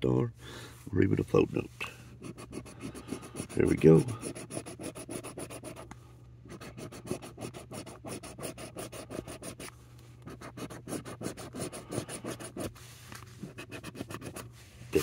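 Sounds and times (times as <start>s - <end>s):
lottery ticket being scratched: 2.2s - 5.9s, 6.5s - 9.7s, 10.3s - 12.7s, 13.4s - 15.0s.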